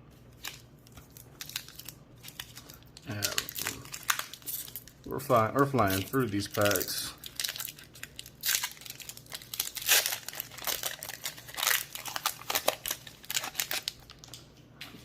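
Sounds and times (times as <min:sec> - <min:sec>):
foil wrapper crinkling and tearing: 0:00.2 - 0:14.4.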